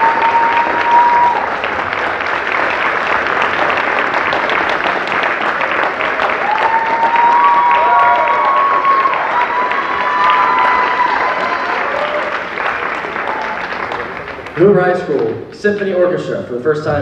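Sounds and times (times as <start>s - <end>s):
long held cheer: 0.0s - 2.3s, 5.5s - 14.4s
audience applauding: 0.0s - 15.4s.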